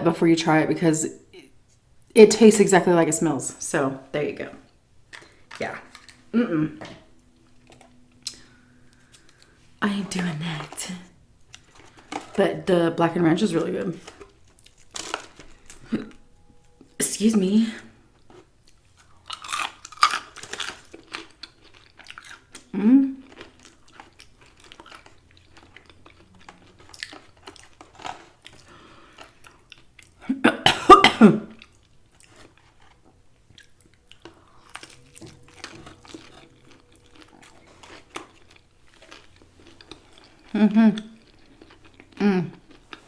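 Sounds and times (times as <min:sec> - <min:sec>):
chewing and crunching fried chicken: 0:01.2 - 0:17.0, 0:17.8 - 0:30.4, 0:31.4 - 0:43.0
loud cough: 0:06.4 - 0:07.0, 0:30.4 - 0:31.6
wet mouth clicks: 0:07.7 - 0:09.5.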